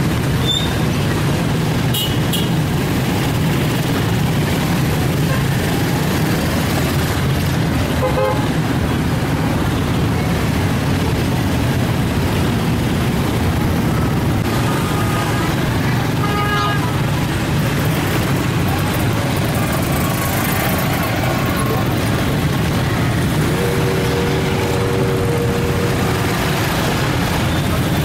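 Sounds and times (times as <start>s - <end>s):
road traffic roar: 0.0s - 28.0s
vehicle horn toot: 1.9s - 2.5s, 8.0s - 8.5s, 23.4s - 26.5s.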